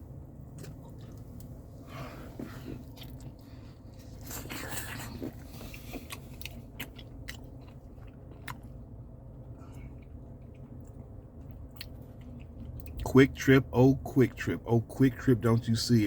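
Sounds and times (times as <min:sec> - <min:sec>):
chewing crackly clicks: 0:05.8 - 0:08.8, 0:09.7 - 0:13.1.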